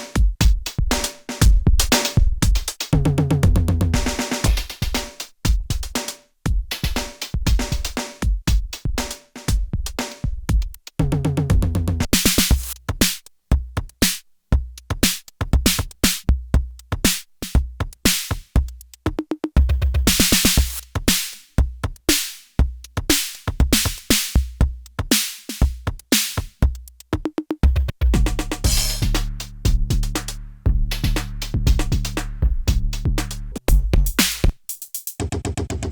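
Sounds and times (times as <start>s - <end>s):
drum machine beat: 0.0s - 35.9s
bright noisy drum hits: 28.2s - 29.2s.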